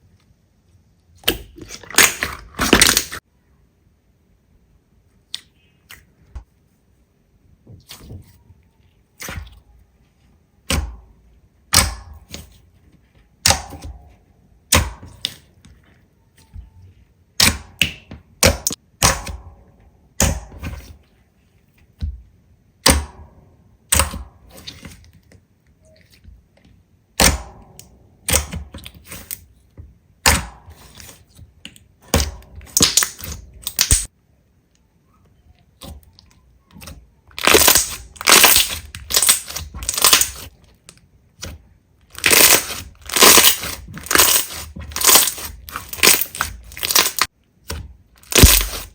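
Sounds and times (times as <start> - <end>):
slime popping and crackling: 32.1 - 34.1, 37.4 - 40.5, 42.1 - 47.3, 48.2 - 48.9.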